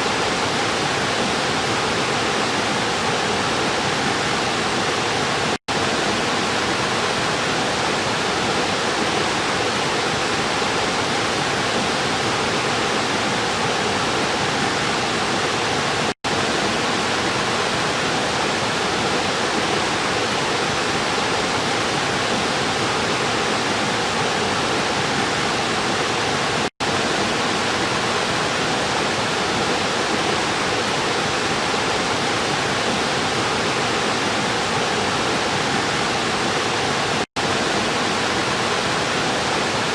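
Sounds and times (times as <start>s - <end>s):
river water rushing: 0.0s - 39.9s.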